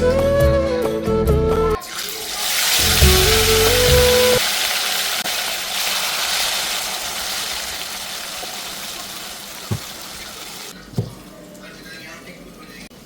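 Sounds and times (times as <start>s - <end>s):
water running in a stream: 2.0s - 11.6s
dull knocks: 9.7s - 10.0s, 11.0s - 11.2s.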